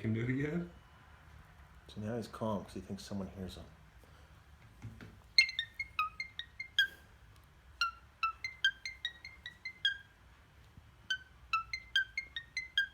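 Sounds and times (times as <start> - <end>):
phone ringtone melody: 5.4 - 7.0, 7.8 - 10.1, 11.1 - 12.9.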